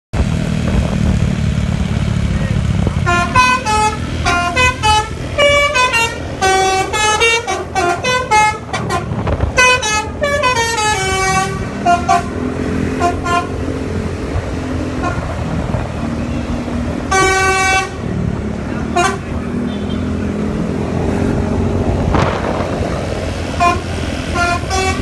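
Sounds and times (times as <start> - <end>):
low engine rumble: 0.2 - 25.0
multi-tone bus horn melody: 3.0 - 13.9, 14.9 - 15.5, 16.2 - 18.1, 18.8 - 20.3, 23.5 - 25.0.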